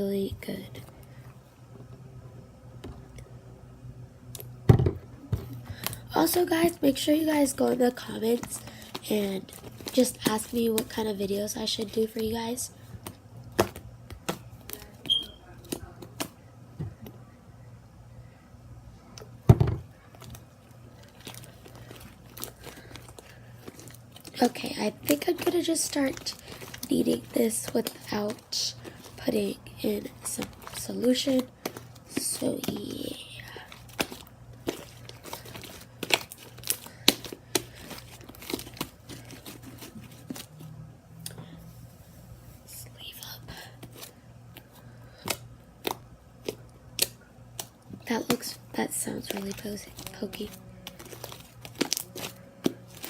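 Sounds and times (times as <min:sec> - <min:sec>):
slime squeak: 0:15.0 - 0:15.5
slime squishing by hand: 0:19.2 - 0:40.7, 0:43.6 - 0:53.0.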